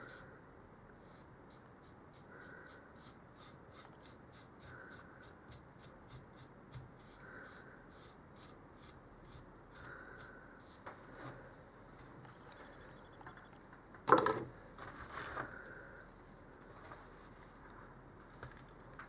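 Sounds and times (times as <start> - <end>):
faint rhythmic scratching: 1.0 - 11.4.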